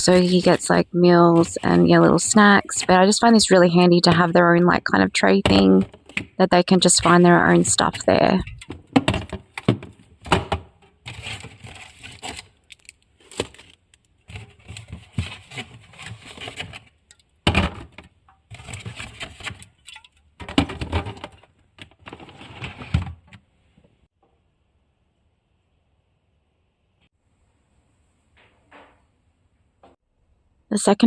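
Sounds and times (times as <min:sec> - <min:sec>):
plastic packaging rustling: 0:08.5 - 0:17.0, 0:18.5 - 0:19.8.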